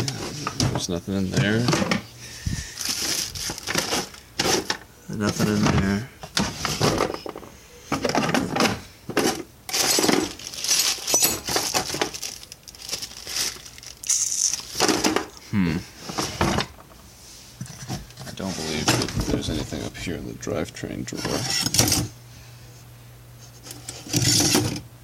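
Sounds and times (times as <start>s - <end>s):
metal pieces clinking and rattling: 9.7s - 15.1s.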